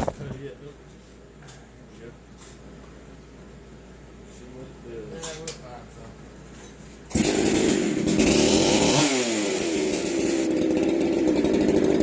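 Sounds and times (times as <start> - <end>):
chainsaw starting and running: 7.1 - 12.0.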